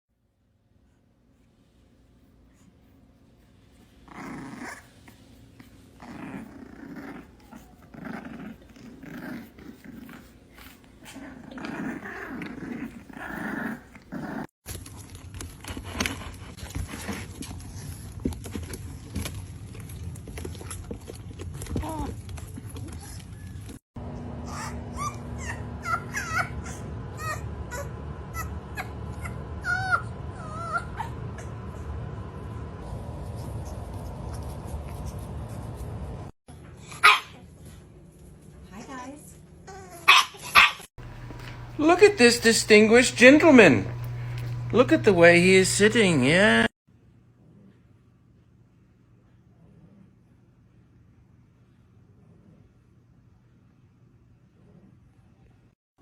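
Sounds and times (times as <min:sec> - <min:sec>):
puppy growling: 0:03.8 - 0:14.6, 0:17.0 - 0:37.2, 0:39.6 - 0:46.8
puppy whimpering: 0:24.4 - 0:31.6, 0:39.7 - 0:46.7.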